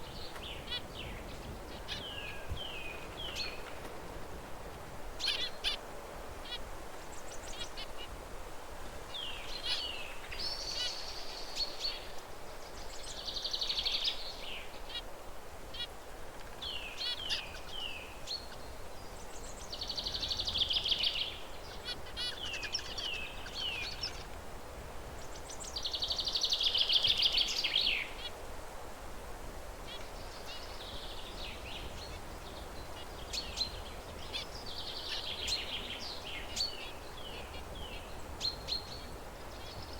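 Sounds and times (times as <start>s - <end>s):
finches calling and singing: 0.0s - 3.7s, 5.2s - 5.8s, 9.1s - 15.0s, 16.6s - 24.4s, 29.9s - 39.9s.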